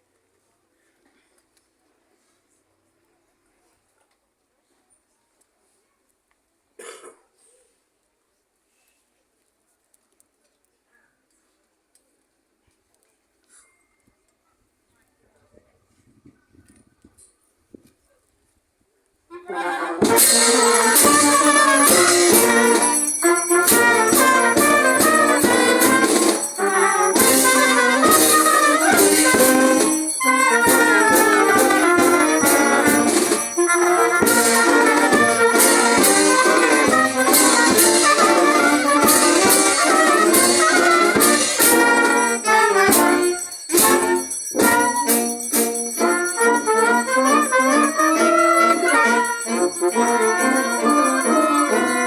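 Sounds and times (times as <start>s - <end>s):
brass band playing march: 19.3s - 52.0s.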